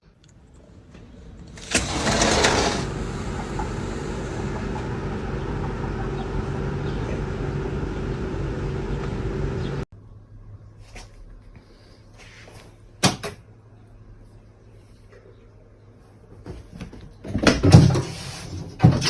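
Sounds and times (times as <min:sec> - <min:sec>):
machine running with low hum: 0:01.6 - 0:10.7.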